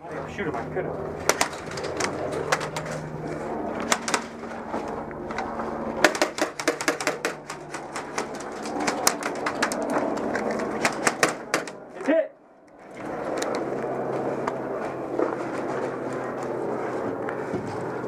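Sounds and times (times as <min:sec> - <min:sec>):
airsoft guns firing: 0:01.3 - 0:02.9, 0:03.9 - 0:04.3, 0:06.0 - 0:09.7, 0:10.8 - 0:11.8.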